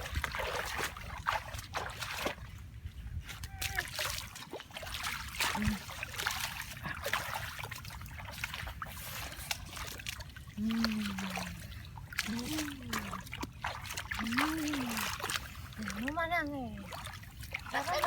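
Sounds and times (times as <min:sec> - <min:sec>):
water splashing and trickling: 0:00.0 - 0:18.0
low voice: 0:12.2 - 0:13.2, 0:14.2 - 0:15.2.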